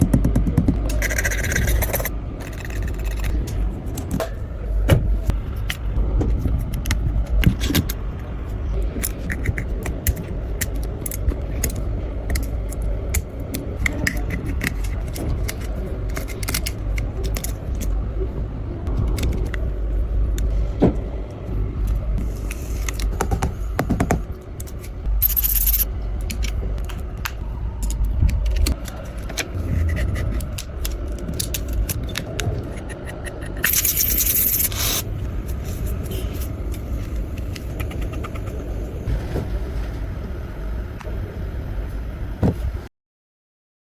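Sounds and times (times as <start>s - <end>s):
steady low rumble: 0.0s - 42.9s
small tools scraping and clicking: 24.6s - 26.5s, 27.8s - 38.5s.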